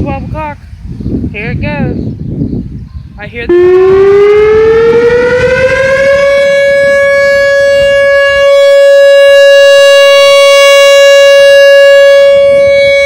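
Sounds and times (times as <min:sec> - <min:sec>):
tornado warning siren wail: 0:03.5 - 0:13.0.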